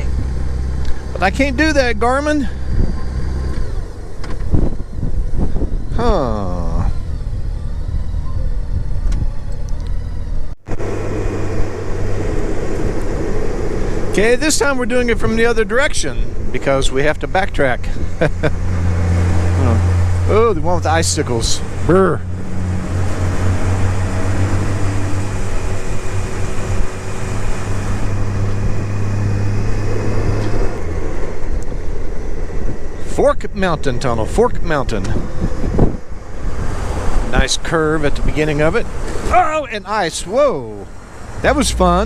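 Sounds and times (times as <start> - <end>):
motorcycle engine running: 0.0 - 42.0
road and wind noise: 0.0 - 42.0.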